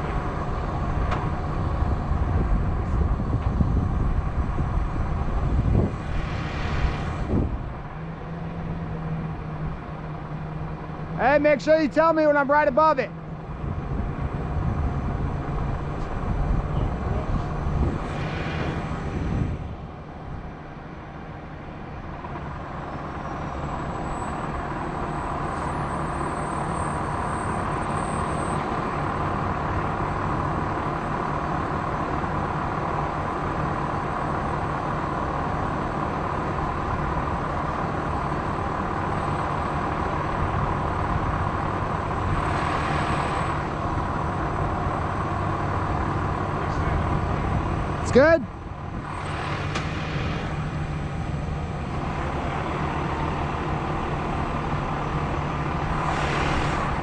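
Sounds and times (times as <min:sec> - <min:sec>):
crane engine running: 0:00.0 - 0:57.0.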